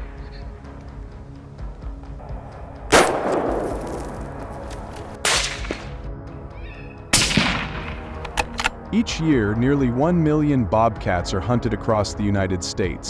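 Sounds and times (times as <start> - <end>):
gunshots with echo: 2.2 - 5.9, 7.2 - 8.2.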